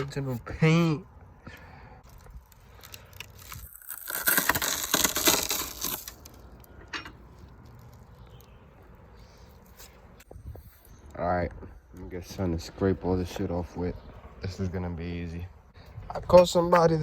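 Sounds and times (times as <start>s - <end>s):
adhesive seal tearing off: 2.8s - 6.5s.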